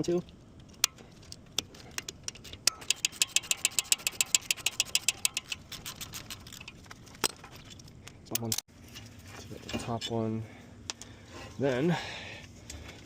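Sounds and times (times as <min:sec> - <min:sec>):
socket ratchet clicking: 0:02.7 - 0:06.8.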